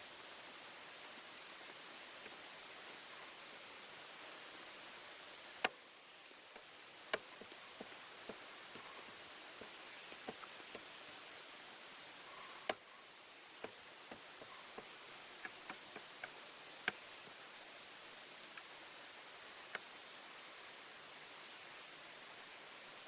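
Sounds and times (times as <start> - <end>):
small ticks and clicks: 5.6 - 11.3, 13.6 - 17.4, 18.5 - 18.7, 19.6 - 19.9.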